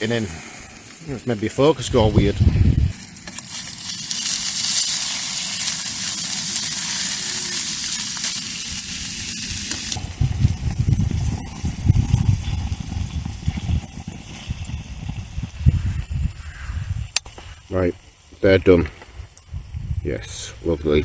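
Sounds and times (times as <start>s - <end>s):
burgers sizzling: 0.0s - 19.4s
wind rumbling on microphone: 1.7s - 3.1s, 8.8s - 21.0s.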